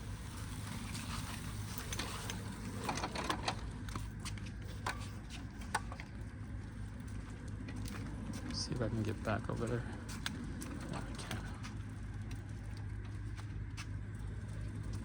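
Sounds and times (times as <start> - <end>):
wheelchair motors humming: 0.0 - 15.0
wheelchair mechanism clicks and knocks: 0.6 - 6.4.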